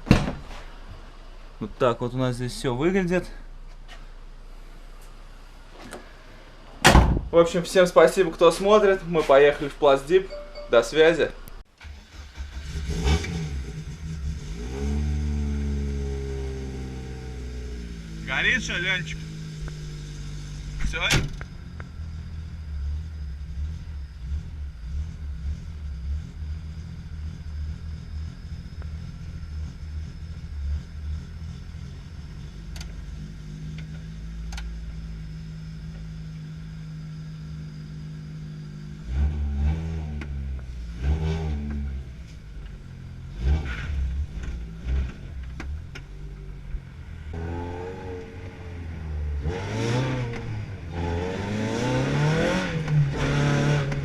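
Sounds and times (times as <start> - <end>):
car pulling away: 11.8 - 54.0
car engine running and revving: 12.3 - 54.0.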